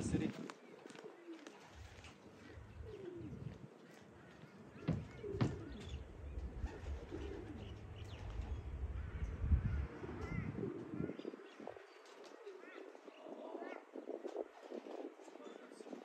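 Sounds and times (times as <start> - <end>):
pigeons cooing: 0.6 - 16.0
sharp knocks: 4.9 - 5.9.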